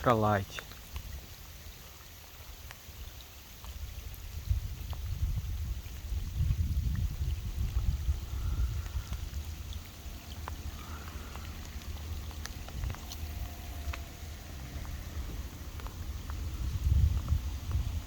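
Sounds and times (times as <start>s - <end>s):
raindrops ticking: 0.0s - 18.0s
wind buffeting microphone: 3.7s - 18.0s.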